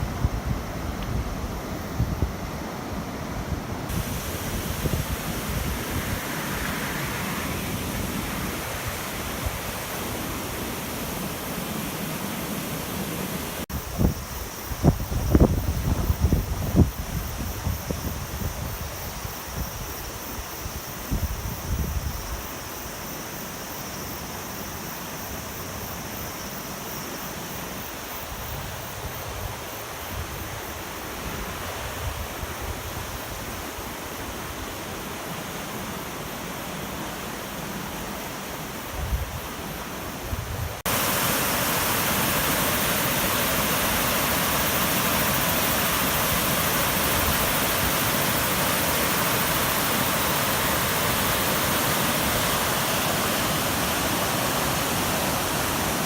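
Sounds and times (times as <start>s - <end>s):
wind gusting on microphone: 0.0s - 11.3s, 13.7s - 22.5s, 38.8s - 41.4s
river torrent rushing: 0.0s - 13.7s, 31.1s - 56.0s.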